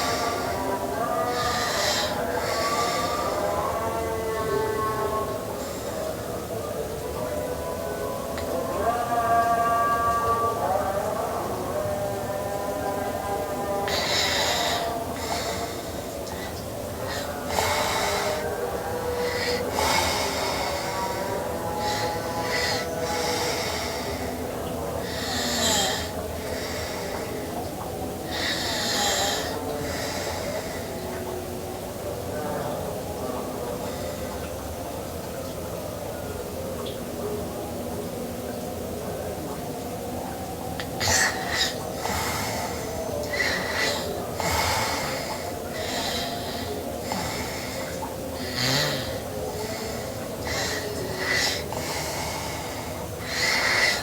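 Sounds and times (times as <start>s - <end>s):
girl snoring: 25.0s - 26.1s, 28.3s - 30.1s, 41.0s - 47.8s, 48.4s - 52.0s, 52.6s - 54.0s.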